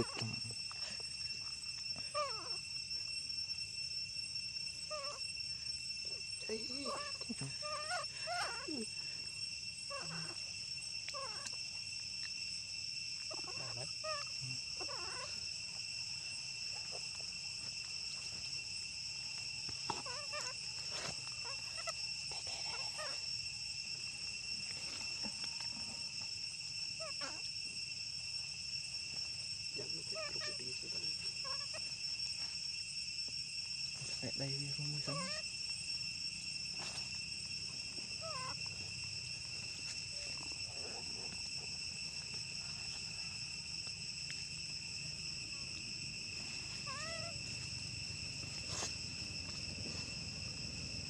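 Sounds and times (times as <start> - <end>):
high-pitched insect drone: 0.0 - 51.0
monkeys chirping: 2.1 - 2.6, 6.5 - 9.0, 13.2 - 15.4, 19.9 - 23.3, 30.0 - 31.9, 35.0 - 35.4, 38.0 - 38.6, 46.6 - 47.5.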